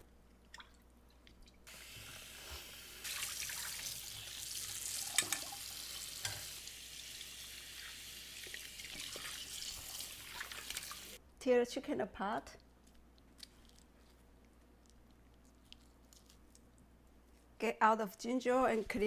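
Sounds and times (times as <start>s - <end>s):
tap water running into bowl: 1.7s - 11.2s.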